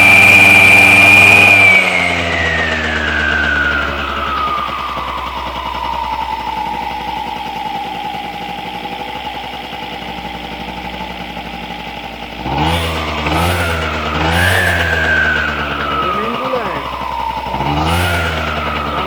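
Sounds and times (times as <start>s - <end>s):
scooter engine running and revving: 0.0s - 19.0s.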